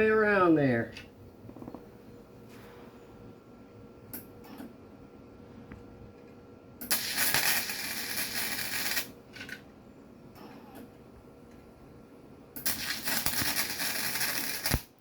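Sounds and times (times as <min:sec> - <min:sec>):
welder arc crackling: 0:06.8 - 0:09.2, 0:12.6 - 0:15.0.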